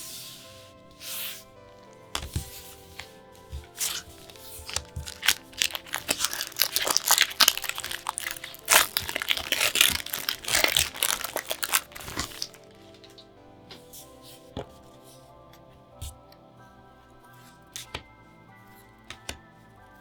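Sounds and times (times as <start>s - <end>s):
soft background music: 0.0s - 20.0s
plastic packaging crackling: 1.5s - 13.3s.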